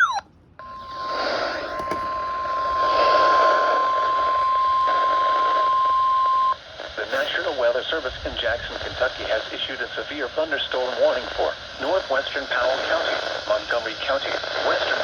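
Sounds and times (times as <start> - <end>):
steady warning beep: 0.0 - 7.3
radio static: 0.0 - 15.0.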